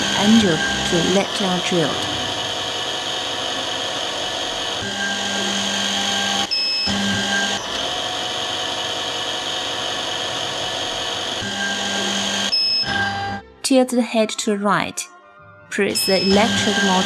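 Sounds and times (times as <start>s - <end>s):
high-speed spindle motor drilling: 0.0s - 13.4s, 16.0s - 17.0s
short beep: 12.5s - 12.9s, 15.9s - 17.0s.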